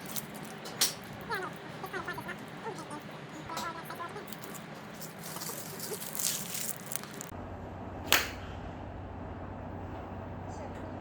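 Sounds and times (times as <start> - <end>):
rustling and handling noise: 0.0 - 7.3.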